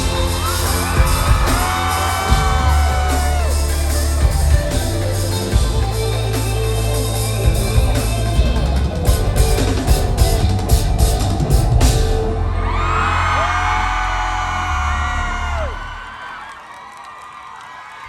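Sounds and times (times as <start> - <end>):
drum and cymbal hits: 0.0 - 12.5
steady low bass: 0.0 - 16.0.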